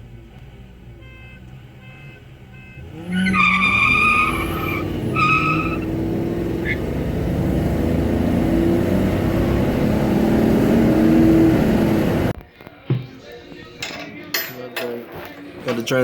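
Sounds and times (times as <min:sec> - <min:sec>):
car engine running: 0:00.0 - 0:12.4.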